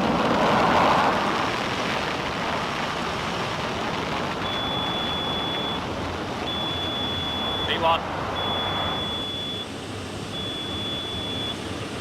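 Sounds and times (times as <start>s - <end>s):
jet engines roaring at takeoff: 0.0s - 12.0s
thin high tone: 6.5s - 9.7s.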